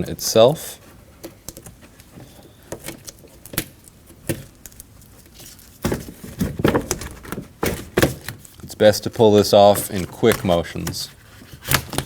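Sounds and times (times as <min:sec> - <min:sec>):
plastic rustle: 0:00.1 - 0:12.0
plastic sheet crinkling: 0:00.7 - 0:12.0.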